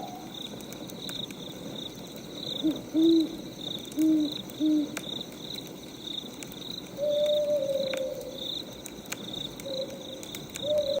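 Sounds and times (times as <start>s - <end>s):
crickets chirping: 0.0s - 11.0s
wood fire crackling: 0.0s - 11.0s
owl hooting: 2.6s - 3.4s, 4.0s - 5.0s, 7.0s - 8.4s, 10.6s - 11.0s.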